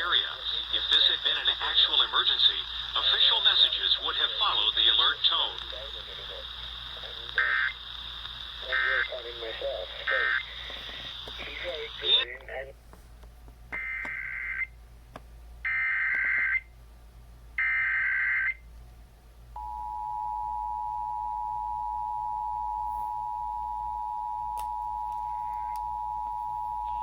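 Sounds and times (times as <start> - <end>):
data header bursts: 0.0 - 12.2.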